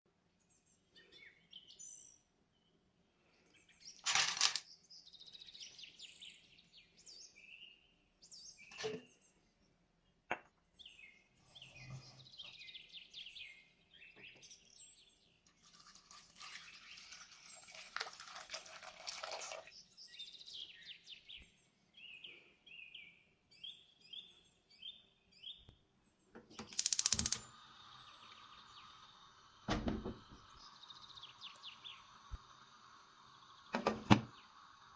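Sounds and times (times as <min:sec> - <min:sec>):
birds chirping: 0:10.3 - 0:15.6, 0:19.4 - 0:34.9.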